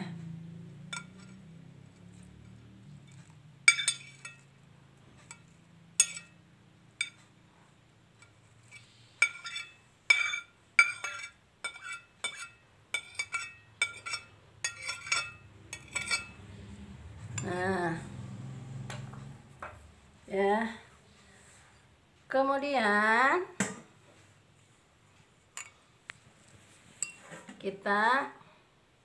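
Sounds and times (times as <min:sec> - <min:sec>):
utensil clinking against bowl: 0:00.8 - 0:04.5, 0:05.2 - 0:06.4, 0:07.0 - 0:07.2, 0:08.2 - 0:16.4, 0:25.6 - 0:25.8, 0:27.0 - 0:27.3.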